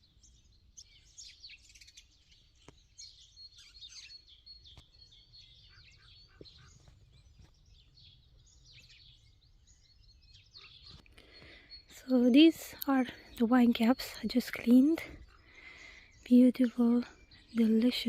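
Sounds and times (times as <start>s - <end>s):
birds chirping and warbling: 0.0s - 18.0s.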